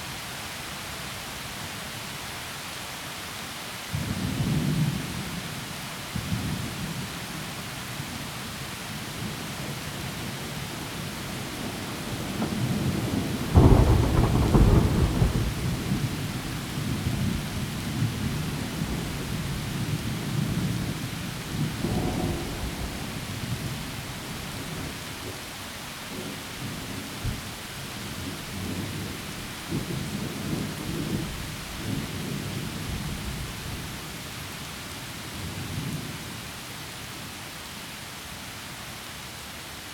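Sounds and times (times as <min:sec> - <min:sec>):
heavy rain through trees: 0:00.0 - 0:39.9
rolling thunder: 0:09.2 - 0:25.4
loud thunderclap: 0:11.4 - 0:25.0.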